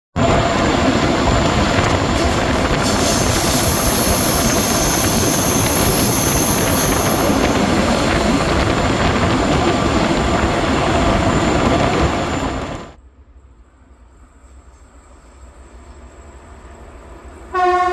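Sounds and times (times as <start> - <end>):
diesel locomotive engine rumble: 0.1 - 17.9
train wheels on rails: 0.2 - 17.9.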